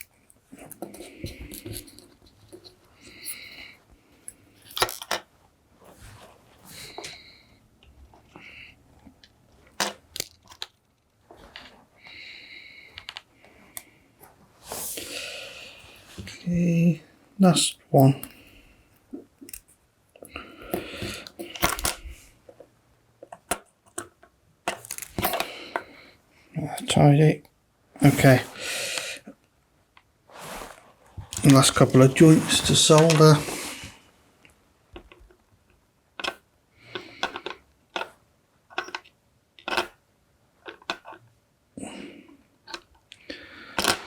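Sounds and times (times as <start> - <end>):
rustles of hands handling parts: 0.0 - 8.4, 9.1 - 12.2, 17.5 - 26.0, 30.3 - 34.1.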